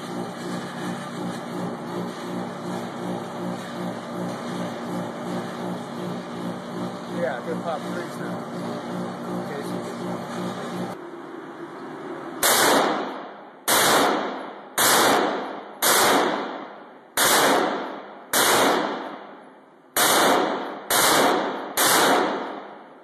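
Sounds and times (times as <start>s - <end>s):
gunshot echo: 12.4s - 19.4s, 20.0s - 22.9s
rifle shots: 12.4s - 19.4s, 20.0s - 22.9s.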